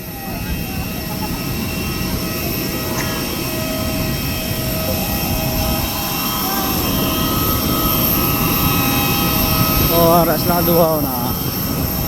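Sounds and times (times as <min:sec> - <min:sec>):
high whining tones: 0:00.0 - 0:12.0
jet engine roar: 0:00.0 - 0:12.0.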